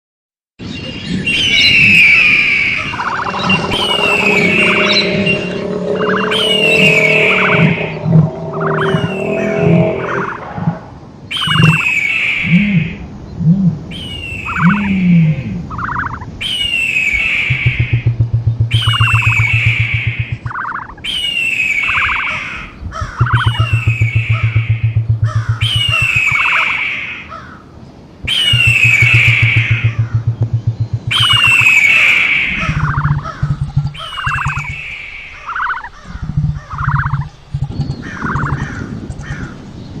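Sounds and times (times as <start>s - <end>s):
trilled chirps: 1.6s - 11.9s, 17.1s - 21.0s, 23.1s - 26.8s, 28.3s - 36.0s
rapid chattering pulses: 1.7s - 11.9s, 17.1s - 21.0s, 23.0s - 26.8s, 28.3s - 38.8s
low pulsing buzz: 1.8s - 11.8s, 17.4s - 21.0s, 23.0s - 26.5s, 28.3s - 34.8s, 35.4s - 38.7s
harsh falling screeches: 2.1s - 11.2s
low fast rattling buzz: 17.5s - 20.9s, 23.0s - 26.4s, 28.3s - 31.8s.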